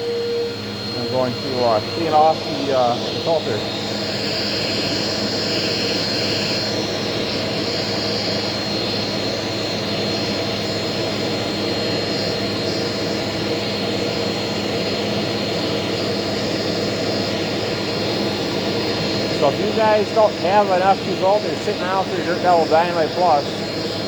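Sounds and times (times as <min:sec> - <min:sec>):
vacuum cleaner whine: 0:00.0 - 0:24.0.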